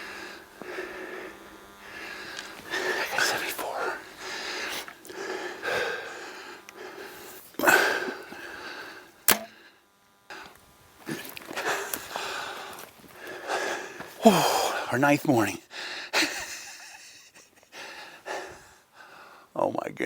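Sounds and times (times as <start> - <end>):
heavy breathing: 0.0 - 15.0, 15.7 - 16.4, 17.7 - 19.5
bow release: 9.2 - 9.6
sharp click: 9.3 - 9.6.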